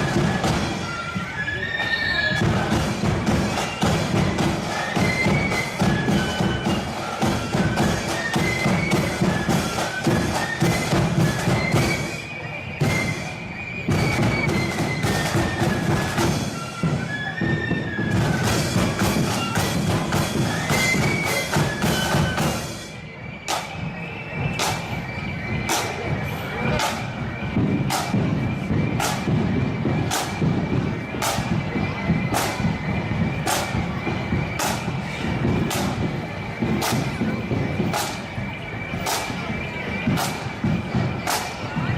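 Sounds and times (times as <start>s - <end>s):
shrill flute melody: 0.0s - 41.9s
snare drum beats: 23.5s - 23.9s, 24.5s - 25.0s, 26.7s - 32.8s, 33.4s - 38.3s, 38.9s - 41.7s.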